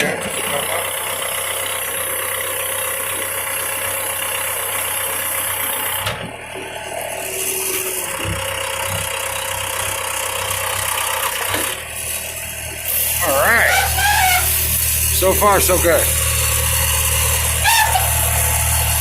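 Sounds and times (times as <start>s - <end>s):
backhoe engine idling: 0.0s - 19.0s.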